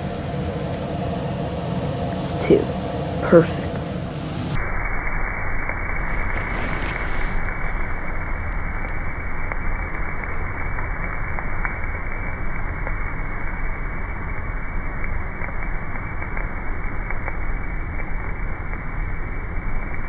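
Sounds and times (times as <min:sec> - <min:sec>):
steaks sizzling on a grill: 0:00.0 - 0:04.6.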